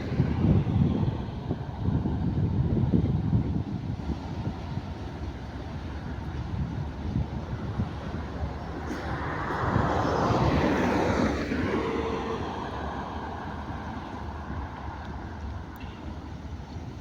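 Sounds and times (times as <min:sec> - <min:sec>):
freight train passing: 0:00.0 - 0:17.0.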